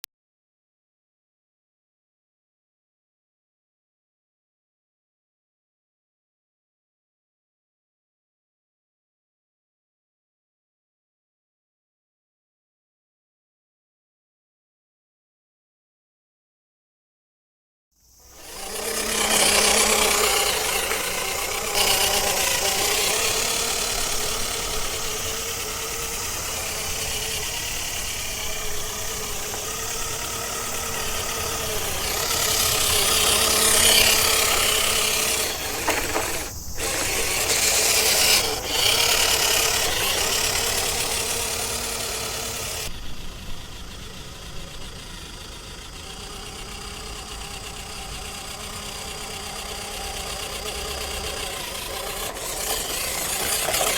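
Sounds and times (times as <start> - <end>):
toy car electric motor whine: 18.0 - 53.9.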